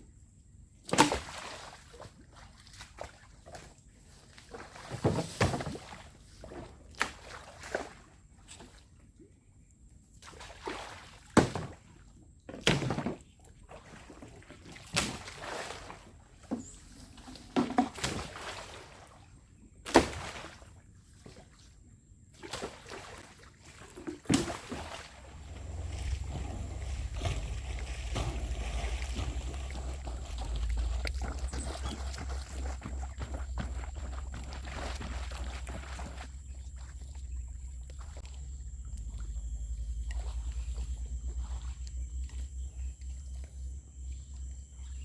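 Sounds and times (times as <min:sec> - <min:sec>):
water sloshing and splashing: 0:00.9 - 0:45.0
low rumble: 0:25.2 - 0:34.6, 0:36.4 - 0:44.4.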